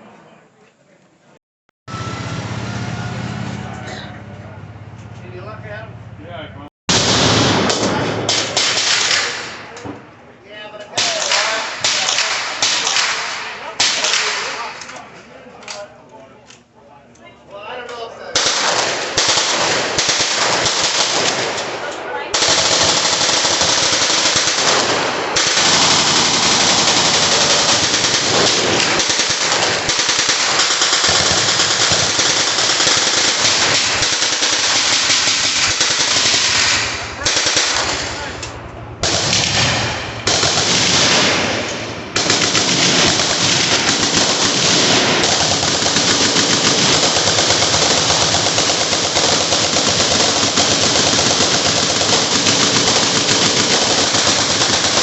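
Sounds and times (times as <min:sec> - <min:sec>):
automatic machine gun fire: 0:06.9 - 0:09.8, 0:11.0 - 0:14.8, 0:18.4 - 0:55.0.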